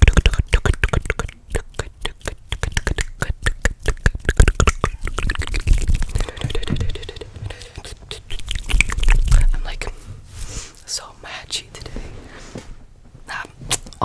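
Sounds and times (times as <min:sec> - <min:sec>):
mouth clicks and pops: 0:00.0 - 0:09.9
low thuds: 0:05.9 - 0:07.6.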